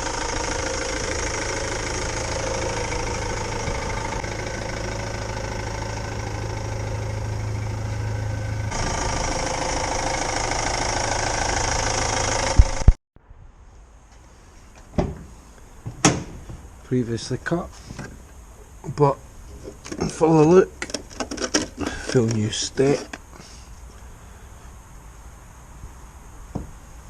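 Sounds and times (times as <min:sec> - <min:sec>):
van engine idling: 0:00.0 - 0:12.9, 0:16.6 - 0:25.1.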